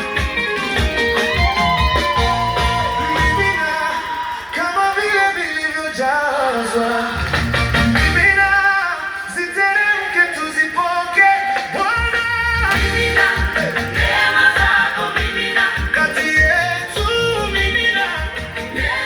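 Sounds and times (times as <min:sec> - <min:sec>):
heavy bass: 0:00.0 - 0:03.7, 0:07.1 - 0:08.7, 0:12.0 - 0:19.0
people singing with music: 0:00.0 - 0:19.0.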